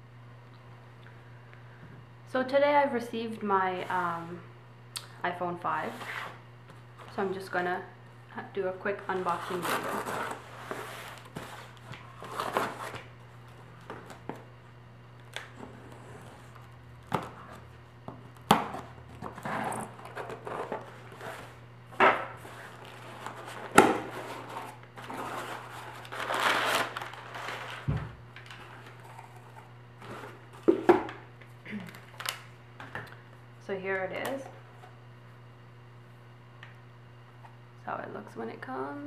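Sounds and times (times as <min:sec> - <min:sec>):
packaging rustling: 0:09.2 - 0:13.1, 0:22.4 - 0:30.7.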